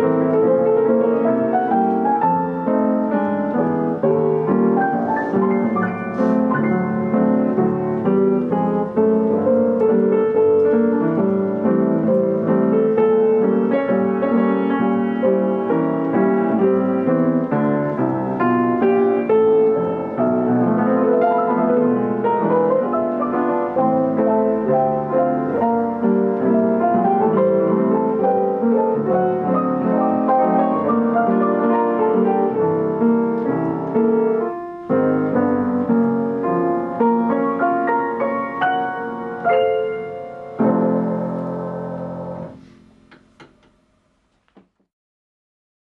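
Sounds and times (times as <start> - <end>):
flowing piano piece: 0.0 - 43.5.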